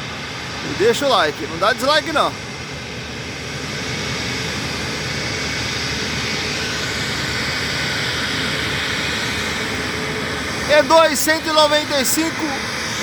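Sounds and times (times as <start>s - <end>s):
jet engines running: 0.0s - 13.0s
faint high whine: 9.6s - 12.7s.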